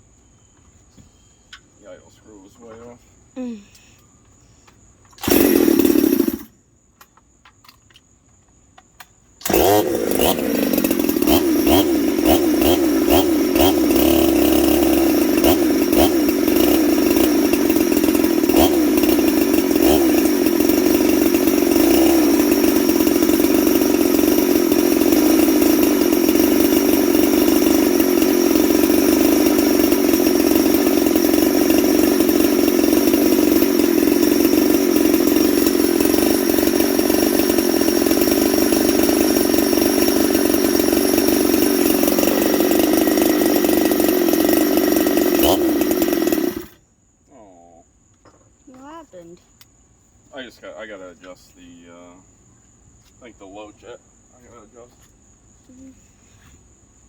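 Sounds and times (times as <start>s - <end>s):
chainsaw running: 5.1s - 6.5s, 9.4s - 46.8s.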